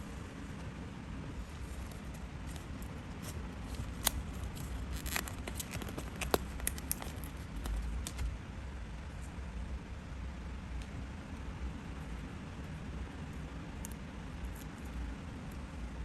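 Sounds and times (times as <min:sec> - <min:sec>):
steady low background hum: 0:00.0 - 0:16.0
paper clicks and crinkles: 0:01.4 - 0:08.3.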